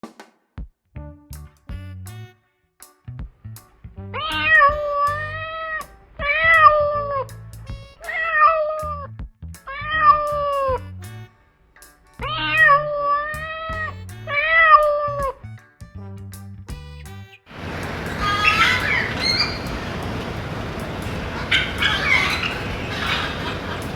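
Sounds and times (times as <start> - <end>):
background music with beat: 0.0 - 3.7, 7.3 - 9.6, 10.3 - 17.2.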